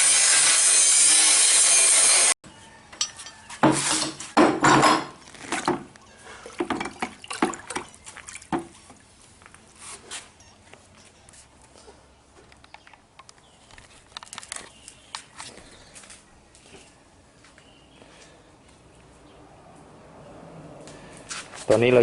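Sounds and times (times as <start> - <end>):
angle grinder grinding metal: 0.0 - 2.4.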